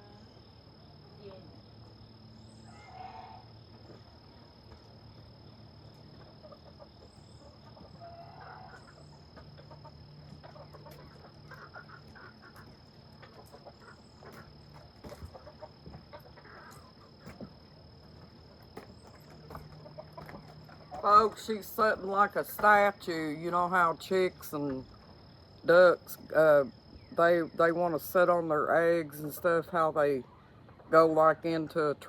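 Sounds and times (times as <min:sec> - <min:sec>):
chickens clucking: 0:02.7 - 0:25.5, 0:30.2 - 0:31.2.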